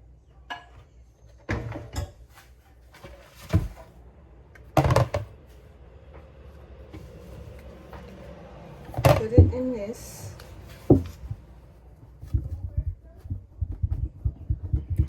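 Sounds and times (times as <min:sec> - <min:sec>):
containers knocking on counter: 0:04.8 - 0:05.3.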